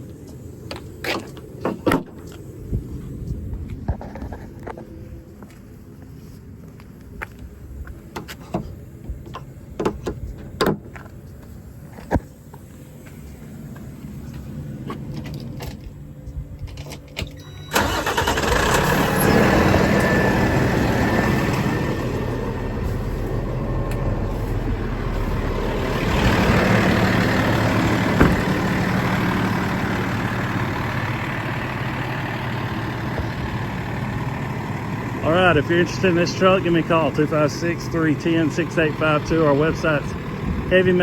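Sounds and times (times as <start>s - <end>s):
engine starting and running: 12.8s - 41.0s.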